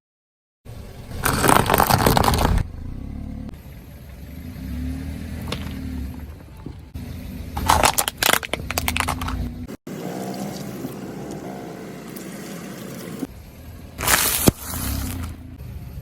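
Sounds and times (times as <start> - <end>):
car engine rumble: 0.7 - 16.0
plastic bottles crushed by tyre: 1.1 - 2.7, 5.3 - 6.8, 7.6 - 9.6, 14.0 - 15.4.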